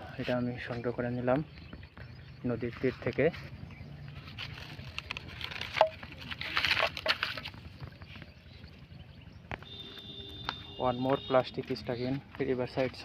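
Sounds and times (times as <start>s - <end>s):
plastic crinkling and rustling: 4.2s - 8.2s.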